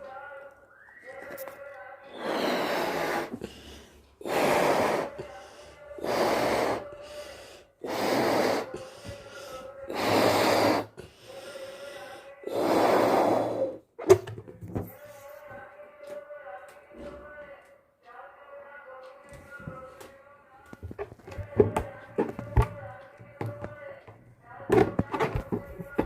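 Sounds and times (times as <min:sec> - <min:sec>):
breathy puffs into balloon: 0:02.1 - 0:13.8.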